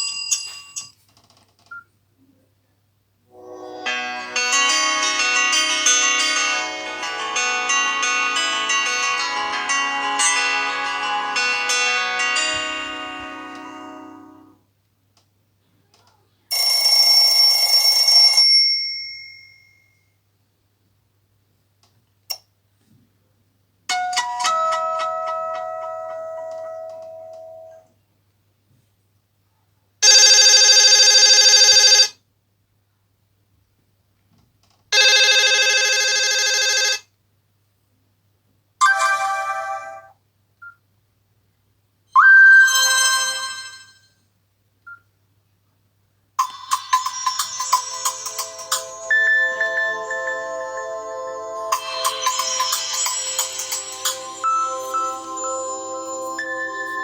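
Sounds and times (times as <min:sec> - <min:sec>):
bell-like phone rings: 0:03.4 - 0:14.5, 0:16.5 - 0:20.0, 0:23.9 - 0:27.9, 0:30.0 - 0:32.1, 0:35.0 - 0:37.1, 0:38.8 - 0:40.2, 0:42.2 - 0:44.2, 0:46.4 - 0:57.0
phone ringtones and alert tones: 0:38.8 - 0:40.1, 0:42.2 - 0:44.0, 0:46.4 - 0:57.0.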